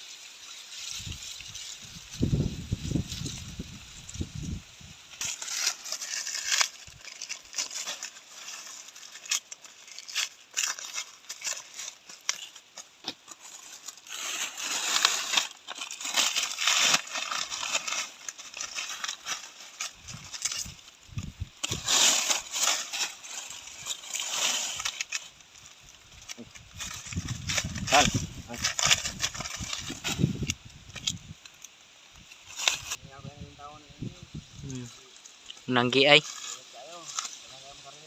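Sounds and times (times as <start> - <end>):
dry corn plants rustling: 0.0 - 38.0
stalks snapping: 5.1 - 33.0.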